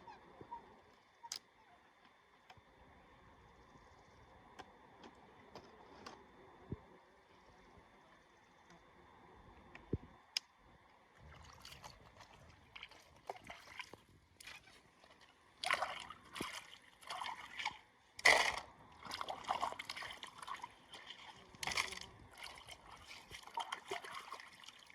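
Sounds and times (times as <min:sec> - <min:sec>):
river water splashing: 0:11.2 - 0:24.9.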